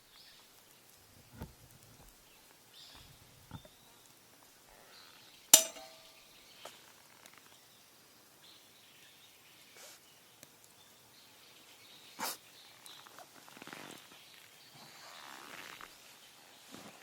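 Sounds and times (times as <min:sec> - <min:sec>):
metal cookware clink ringing: 0:05.6 - 0:06.2
soft knocks of cookware: 0:05.6 - 0:06.2.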